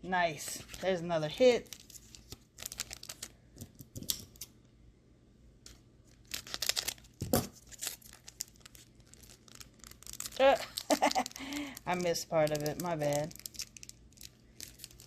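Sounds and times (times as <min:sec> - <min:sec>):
foil crinkling: 0:00.7 - 0:03.4, 0:06.1 - 0:15.0.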